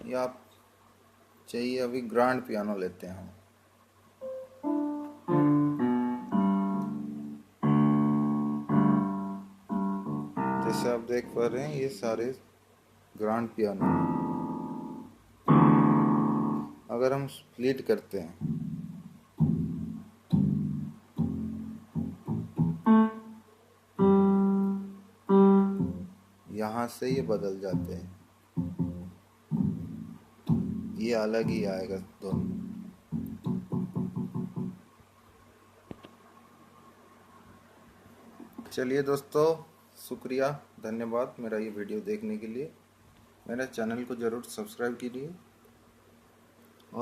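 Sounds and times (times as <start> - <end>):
electronic keyboard piano chords: 4.2 - 11.8, 13.8 - 16.8, 18.4 - 23.4, 24.0 - 26.2, 27.1 - 28.0, 28.6 - 34.8.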